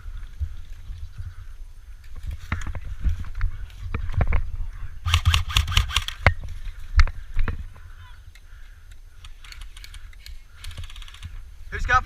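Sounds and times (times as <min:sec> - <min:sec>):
wind on microphone: 0:00.0 - 0:08.0
airsoft gun shots: 0:05.1 - 0:06.3.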